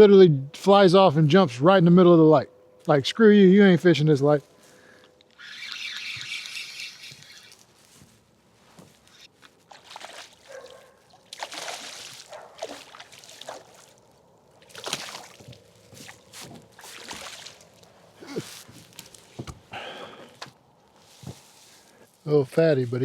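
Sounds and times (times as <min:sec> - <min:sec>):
water splashing and sloshing: 0:09.3 - 0:19.4
sharp drips and knocks: 0:09.7 - 0:14.0, 0:14.6 - 0:17.9.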